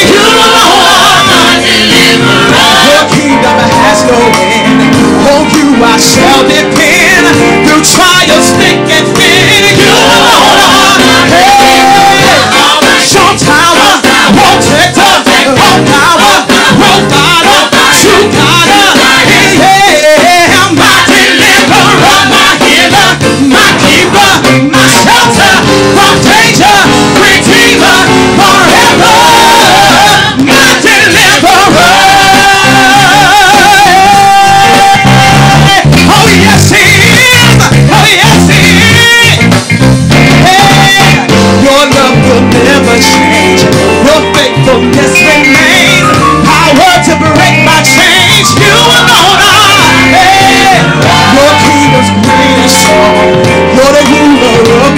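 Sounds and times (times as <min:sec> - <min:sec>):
person singing with vibrato: 0:00.0 - 0:39.5, 0:40.3 - 0:54.9
gospel band playing: 0:00.0 - 0:54.9.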